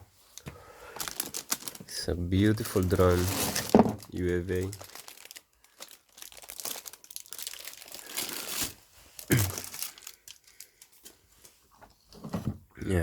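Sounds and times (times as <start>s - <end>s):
packaging crinkling: 0.3s - 11.4s.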